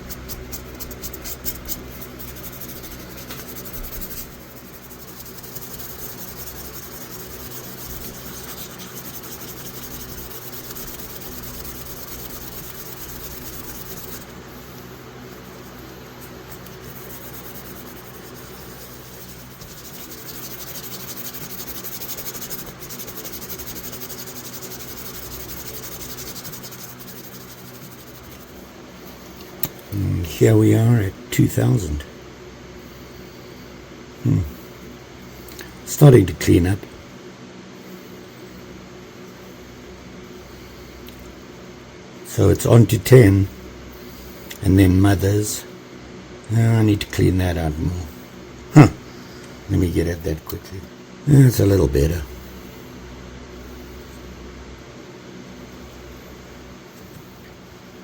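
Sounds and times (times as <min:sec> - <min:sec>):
sandpaper rubbing on steel blade: 0:00.0 - 0:14.4, 0:16.5 - 0:28.7
faint low hum: 0:00.0 - 0:58.0.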